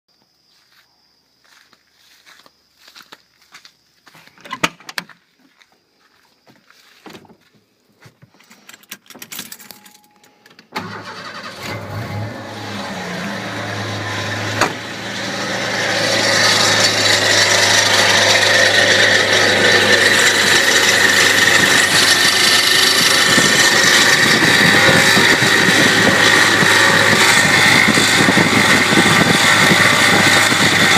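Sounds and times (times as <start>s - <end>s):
truck engine idling: 10.8s - 30.9s
high-pitched alternator noise: 11.7s - 30.9s.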